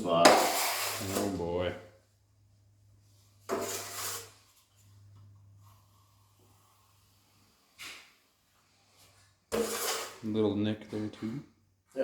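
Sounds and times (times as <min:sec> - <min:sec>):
drywall knife scraping compound: 0:00.0 - 0:01.7, 0:03.4 - 0:04.7, 0:09.1 - 0:10.4.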